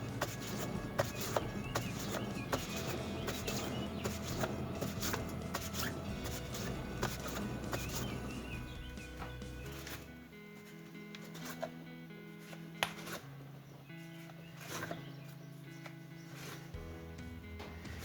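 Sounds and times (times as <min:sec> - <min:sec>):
car wheel spinning with clicks: 0:00.0 - 0:10.1
faint music: 0:00.0 - 0:18.0.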